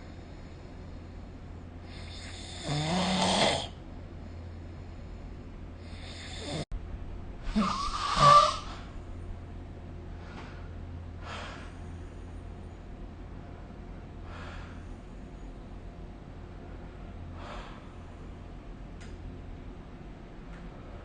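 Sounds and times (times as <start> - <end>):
person snoring: 1.9 - 3.8, 5.8 - 6.7, 7.4 - 8.8
faint breath: 10.1 - 12.8, 13.4 - 15.6, 16.6 - 18.4.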